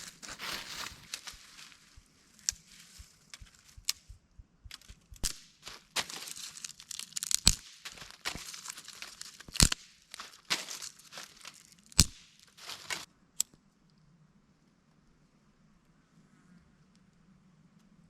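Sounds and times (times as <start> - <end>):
firewood snapping and cracking: 0.0 - 4.0, 4.7 - 13.1.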